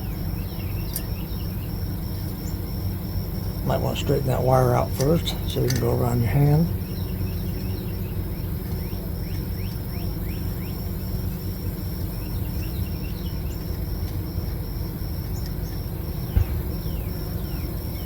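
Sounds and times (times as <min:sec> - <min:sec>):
crickets chirping: 0:00.0 - 0:18.0
steady low rumble: 0:00.0 - 0:18.0.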